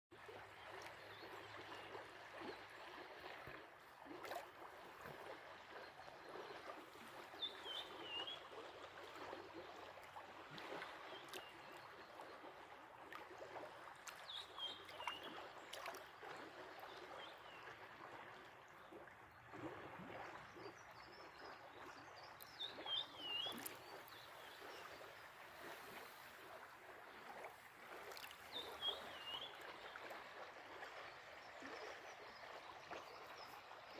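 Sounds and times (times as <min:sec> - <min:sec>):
stream running: 0:00.1 - 0:33.9.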